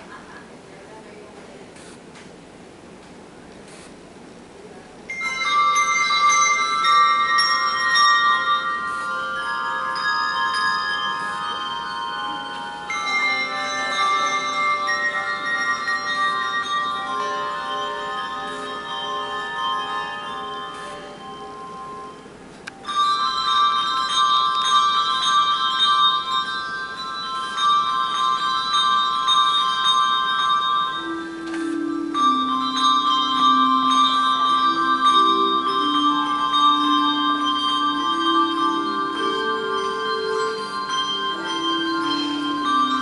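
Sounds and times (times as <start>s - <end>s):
handbell choir playing: 5.1s - 43.0s.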